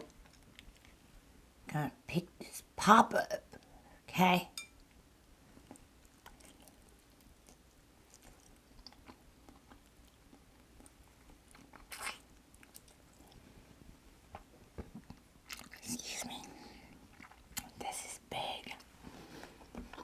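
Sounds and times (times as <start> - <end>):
person chewing: 5.6 - 13.4, 14.3 - 16.0, 16.8 - 17.8.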